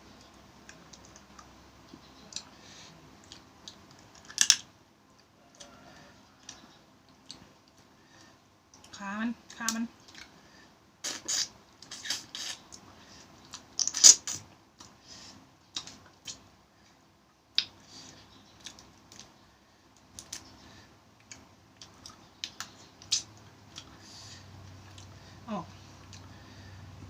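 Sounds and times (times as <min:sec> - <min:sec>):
crab shell cracking by hand: 0:03.7 - 0:04.6.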